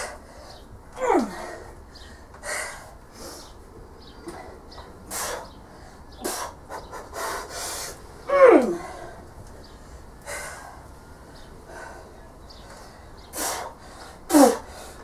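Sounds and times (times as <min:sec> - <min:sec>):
woman breathing hard: 0:00.0 - 0:03.6, 0:04.2 - 0:15.0
woman groaning with effort: 0:01.0 - 0:01.6, 0:08.3 - 0:08.9.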